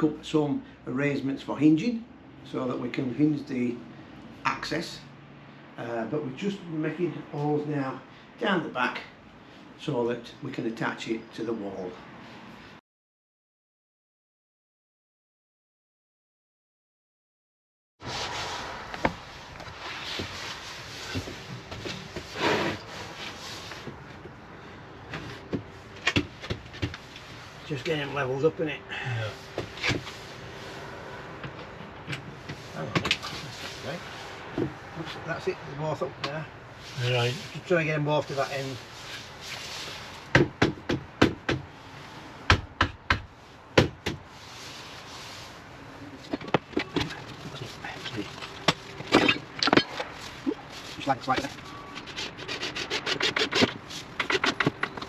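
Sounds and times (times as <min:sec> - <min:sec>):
wood scraping: 0:18.0 - 0:24.4, 0:46.2 - 0:55.0
wooden panels knocking and clicking: 0:52.0 - 0:55.0.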